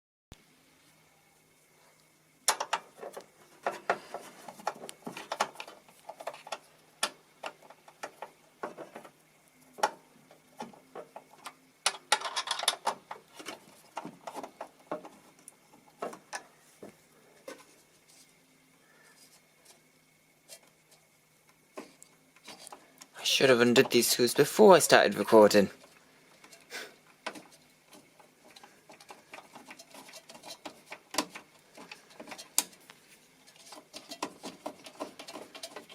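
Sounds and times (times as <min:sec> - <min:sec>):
faint steady hum: 0:00.3 - 0:35.9
screwdriver and metal parts rattling: 0:11.9 - 0:15.2, 0:27.2 - 0:32.8, 0:33.5 - 0:35.9.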